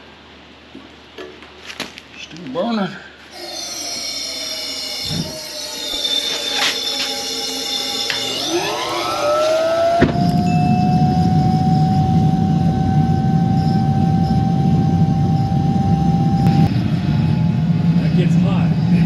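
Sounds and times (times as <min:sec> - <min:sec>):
electric blower motor whine: 0:03.3 - 0:19.0
rushing air rumble: 0:10.0 - 0:19.0.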